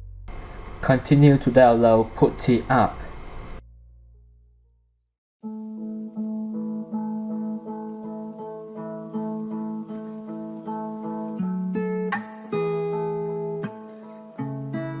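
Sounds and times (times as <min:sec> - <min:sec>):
acoustic guitar strumming chords: 0:05.4 - 0:15.0.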